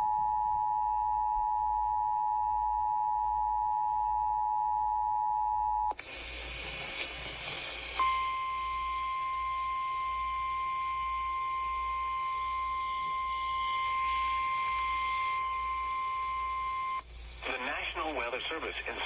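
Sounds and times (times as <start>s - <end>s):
faint radio hiss: 5.9s - 19.0s
steady alarm tone: 8.0s - 17.1s.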